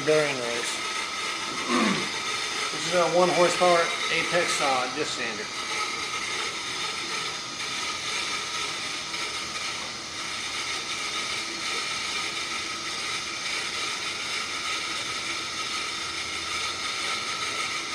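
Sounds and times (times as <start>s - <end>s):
disc sander whirring: 0.0s - 17.9s.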